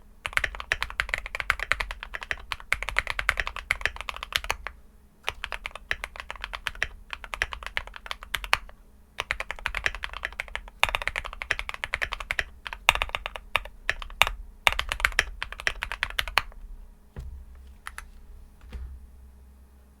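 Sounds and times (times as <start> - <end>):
typing on mechanical keyboard: 0.2 - 4.7, 5.3 - 16.6
soft low thump: 16.5 - 19.9.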